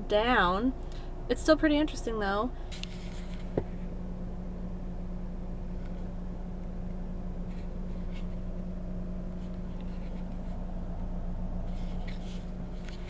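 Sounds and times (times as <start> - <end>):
car engine idling: 0.0 - 13.0
faint rustles: 2.6 - 4.0, 5.7 - 13.0.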